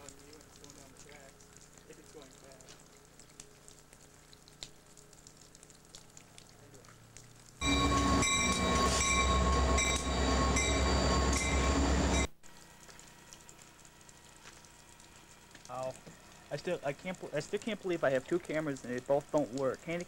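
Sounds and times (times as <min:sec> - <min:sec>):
freight train cars rumbling: 0:07.6 - 0:12.3
steady high tones: 0:07.6 - 0:12.3.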